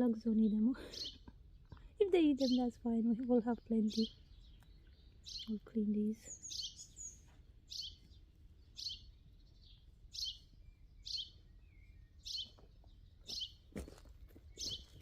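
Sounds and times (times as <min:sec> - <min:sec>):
songbird high falling call: 0:06.2 - 0:08.0, 0:08.7 - 0:12.6.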